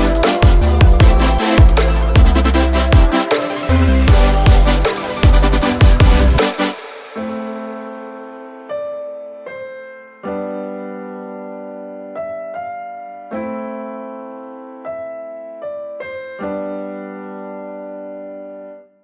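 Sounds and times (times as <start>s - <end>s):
slow gentle piano: 7.2s - 19.0s.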